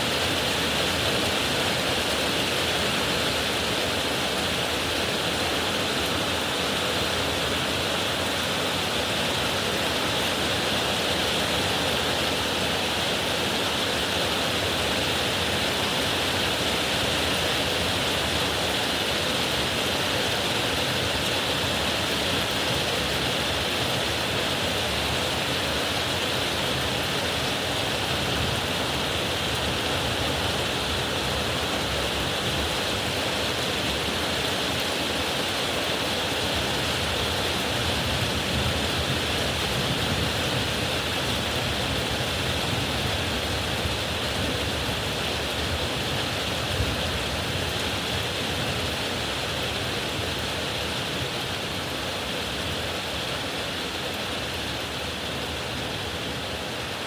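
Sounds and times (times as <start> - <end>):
heavy rain pouring: 0.0 - 57.0.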